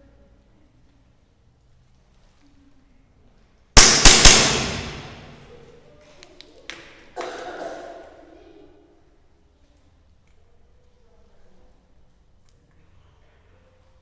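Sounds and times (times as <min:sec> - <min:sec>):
loud sharp bangs with hiss: 0:03.8 - 0:05.4
sharp pops: 0:03.8 - 0:05.4.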